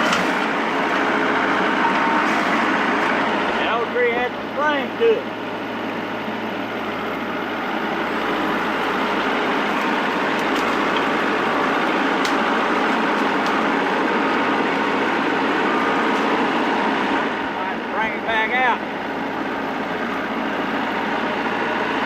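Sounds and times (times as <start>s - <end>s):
tractor engine running: 0.0s - 22.0s.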